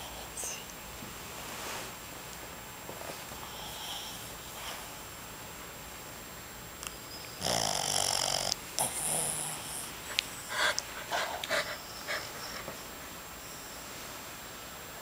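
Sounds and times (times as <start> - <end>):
dog snoring: 7.4 - 9.9.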